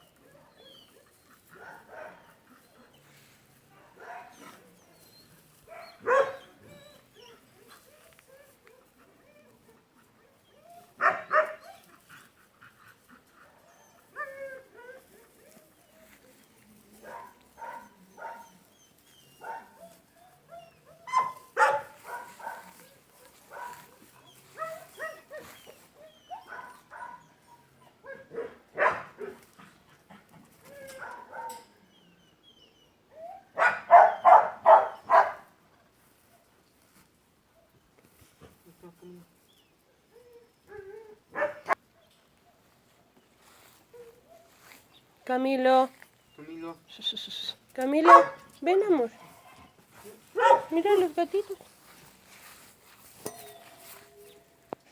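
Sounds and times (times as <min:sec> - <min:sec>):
dog barking and whining: 0:03.8 - 0:12.0, 0:13.4 - 0:16.1, 0:17.0 - 0:29.4, 0:30.6 - 0:35.5, 0:40.1 - 0:42.6, 0:48.0 - 0:51.0.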